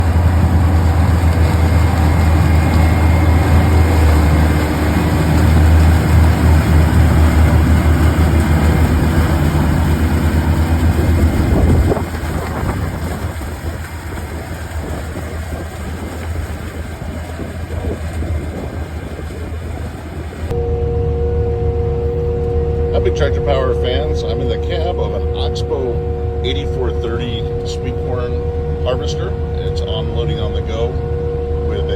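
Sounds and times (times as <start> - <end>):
harvester machinery rumbling: 0.0 - 31.9.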